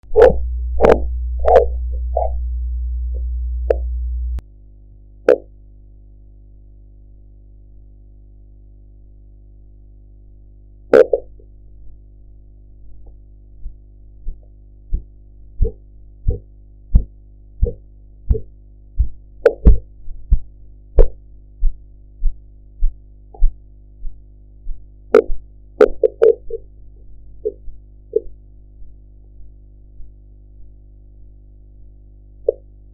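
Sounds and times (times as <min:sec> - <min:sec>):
steady low hum: 0:00.0 - 0:32.9
low heartbeat thumps through stethoscope: 0:13.6 - 0:26.7, 0:27.4 - 0:30.8.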